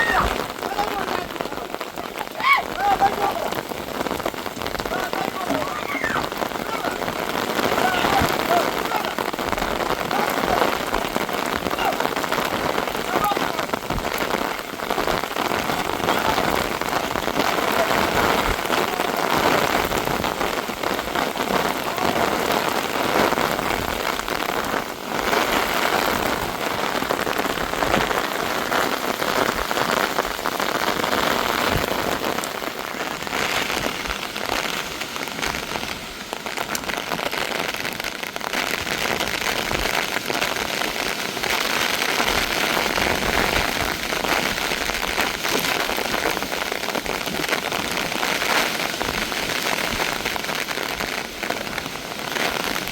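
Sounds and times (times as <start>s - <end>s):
heavy rain falling: 0.0s - 52.9s.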